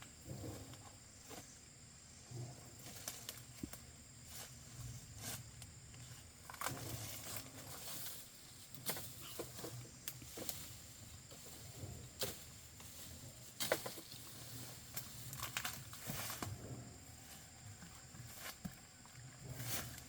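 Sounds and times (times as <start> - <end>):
dry leaves rustling and snapping: 5.2 - 20.0.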